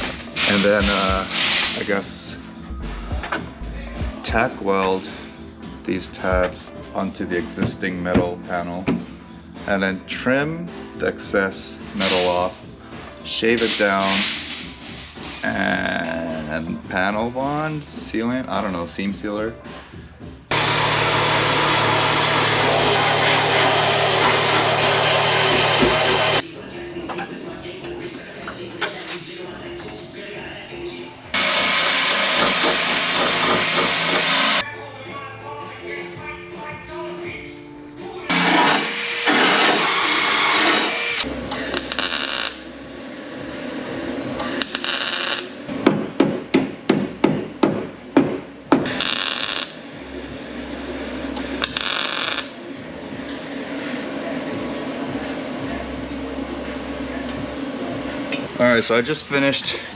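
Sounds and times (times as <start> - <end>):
hammer blows on sheet metal: 0.0 - 2.2
power grinder whining on metal: 20.5 - 26.4, 31.4 - 34.6, 38.3 - 42.7.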